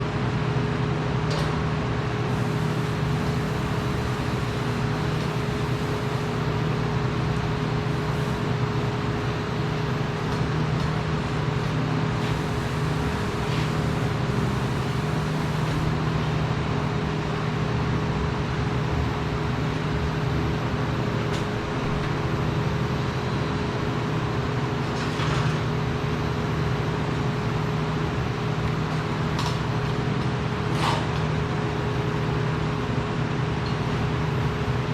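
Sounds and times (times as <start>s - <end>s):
machinery droning: 1.9s - 16.9s.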